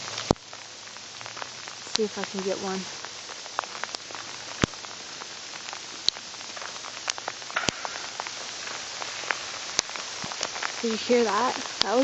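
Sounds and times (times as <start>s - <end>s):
freezing rain hissing: 0.0s - 12.0s
ice ticking and clicking: 1.2s - 12.0s
ice cracks: 5.6s - 12.0s.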